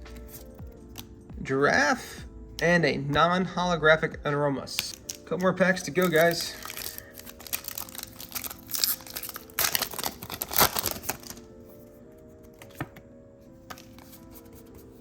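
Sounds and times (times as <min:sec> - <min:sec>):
soft background music: 0:00.0 - 0:15.0
foil wrapper crinkling and tearing: 0:05.9 - 0:11.5.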